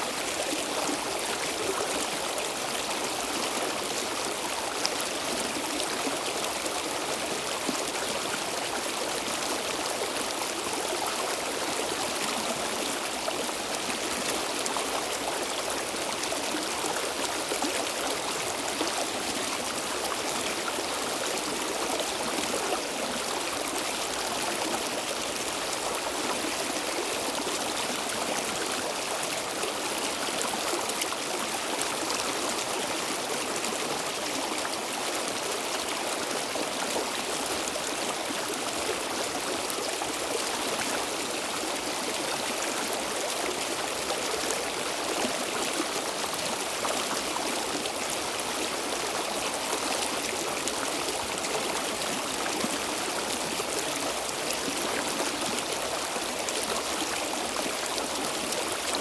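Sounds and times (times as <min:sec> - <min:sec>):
stream water flowing over stones: 0:00.0 - 0:59.0.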